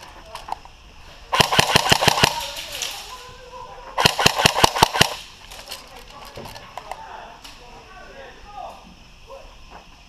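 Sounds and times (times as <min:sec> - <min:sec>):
airsoft gun rapid shots: 0:01.3 - 0:02.6, 0:04.0 - 0:05.3.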